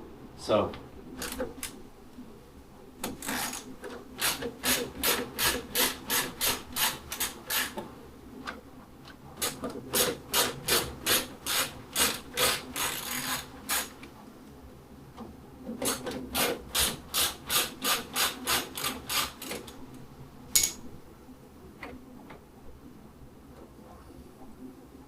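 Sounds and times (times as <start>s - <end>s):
screwdriver turning screws: 1.2s - 1.4s, 10.0s - 13.9s, 15.9s - 19.7s.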